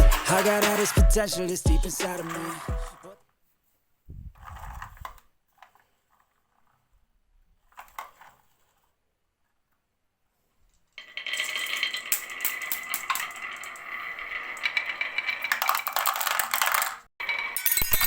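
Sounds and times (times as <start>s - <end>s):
marbles rolling down a marble run: 2.1s - 3.0s, 11.0s - 18.0s.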